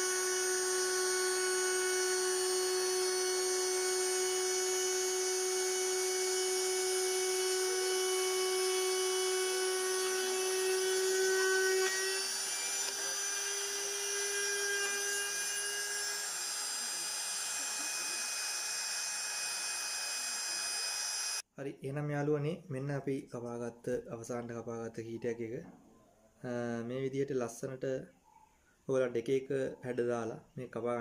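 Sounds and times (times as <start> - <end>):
spindle motor whining: 0.0 - 21.4.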